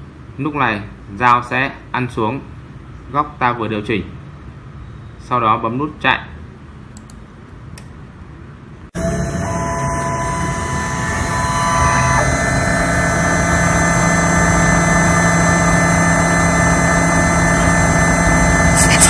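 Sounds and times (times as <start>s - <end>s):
milling machine whine: 9.0s - 19.0s.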